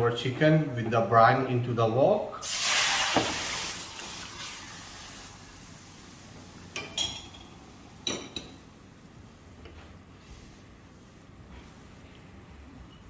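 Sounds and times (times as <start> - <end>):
liquid splashing into a wok: 2.4 - 5.2
utensil clinking against wok: 6.8 - 8.6.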